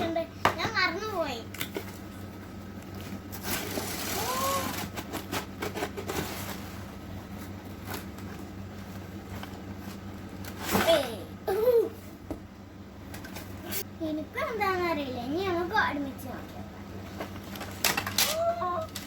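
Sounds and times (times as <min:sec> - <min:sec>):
packaging rustling: 0:03.3 - 0:06.9
child's voice humming: 0:04.1 - 0:04.8.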